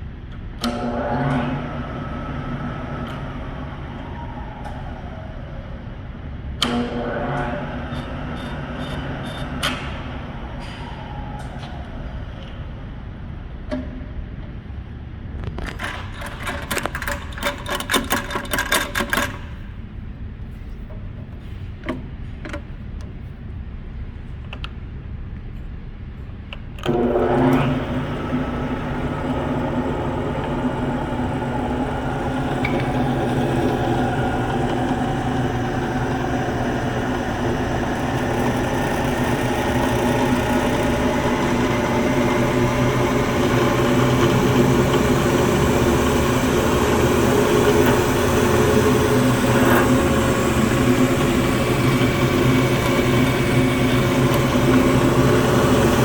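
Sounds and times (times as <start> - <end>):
drill press motor humming: 0.5 - 13.6, 26.8 - 56.0.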